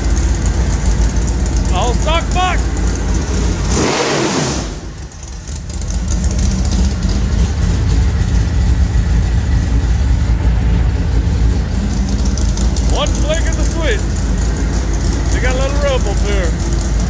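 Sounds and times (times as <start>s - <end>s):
engine rumbling: 0.0s - 17.0s.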